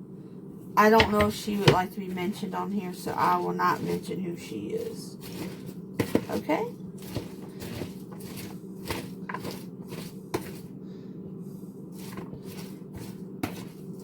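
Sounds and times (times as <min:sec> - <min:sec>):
steady low hum: 0:00.0 - 0:14.0
kitchen items clicking and knocking: 0:01.0 - 0:01.9.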